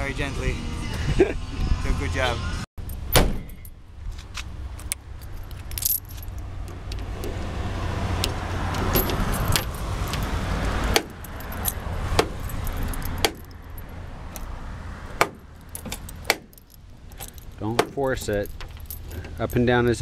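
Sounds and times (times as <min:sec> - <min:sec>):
keys jangling on a ring: 0:04.8 - 0:07.4, 0:08.2 - 0:14.5, 0:15.5 - 0:20.0.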